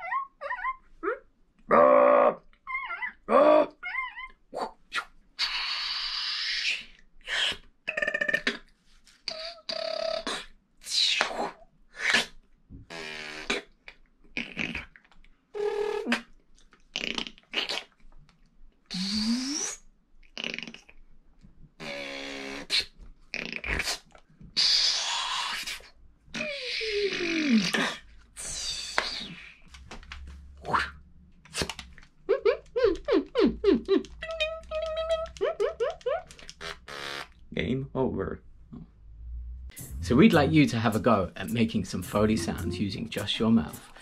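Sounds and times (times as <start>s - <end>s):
person beatboxing sound effects: 18.9s - 19.8s, 21.8s - 24.0s, 24.6s - 29.6s, 30.6s - 37.2s, 39.7s - 44.0s.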